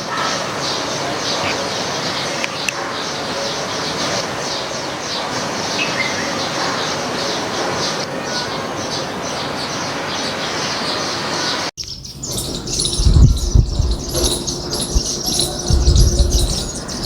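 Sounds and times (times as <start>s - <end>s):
small birds chirping: 11.5s - 17.0s
low thumps: 11.9s - 17.0s.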